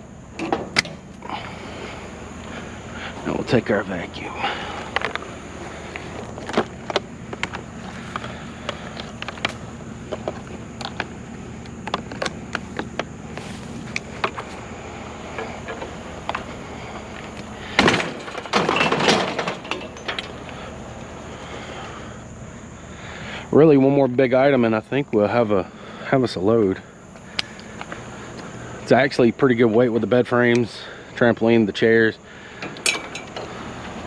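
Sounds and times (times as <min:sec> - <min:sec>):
scrap clanks and knocks: 0:15.3 - 0:16.5, 0:17.1 - 0:20.6
clattering crash: 0:17.7 - 0:20.4.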